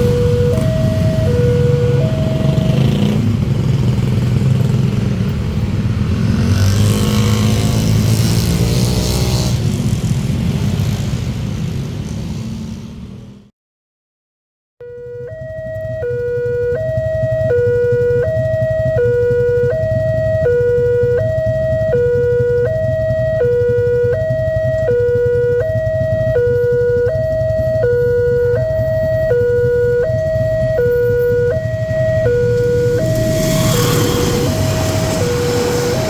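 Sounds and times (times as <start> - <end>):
two-tone crossing alarm: 0.0 - 5.0, 14.8 - 36.0
low rumble: 29.8 - 36.0.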